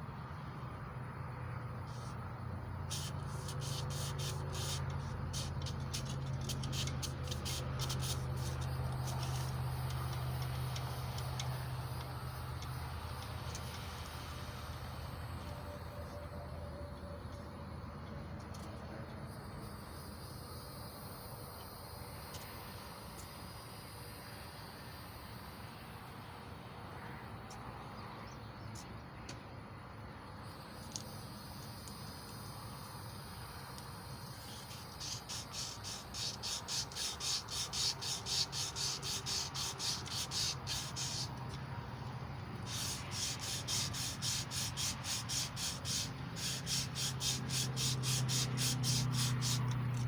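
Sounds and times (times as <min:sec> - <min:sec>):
emery cloth rubbing on metal: 0:02.9 - 0:11.2, 0:34.5 - 0:41.4, 0:42.6 - 0:50.0.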